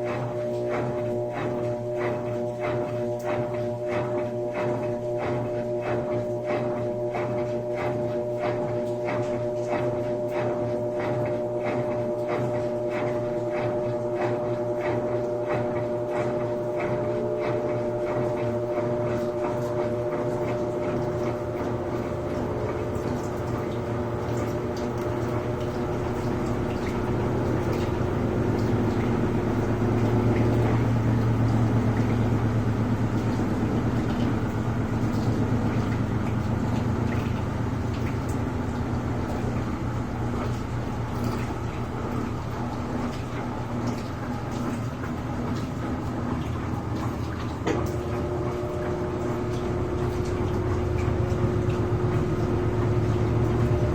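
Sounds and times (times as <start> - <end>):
steady whine: 0.0 - 33.9, 47.6 - 53.9
washing machine spinning: 0.0 - 53.9
water draining: 0.0 - 53.9.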